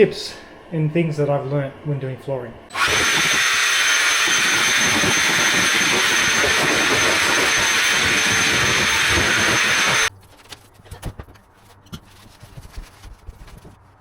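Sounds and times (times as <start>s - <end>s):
vacuum cleaner running: 2.7s - 10.1s.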